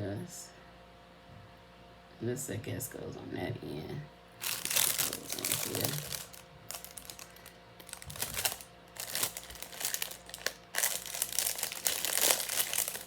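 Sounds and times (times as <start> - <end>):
plastic bag crinkling: 4.4 - 13.0.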